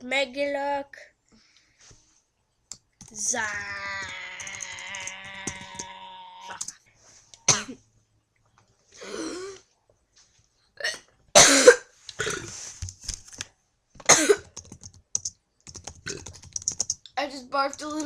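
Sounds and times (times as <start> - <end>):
drawn-out voice sound: 3.1 - 6.8
girl coughing and gagging: 7.4 - 7.8, 10.8 - 12.5, 14.1 - 14.5.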